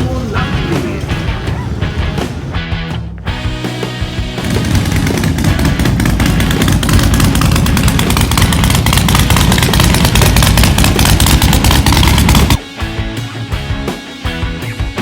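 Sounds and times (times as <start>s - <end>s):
motorcycle engine running: 0.0s - 12.6s.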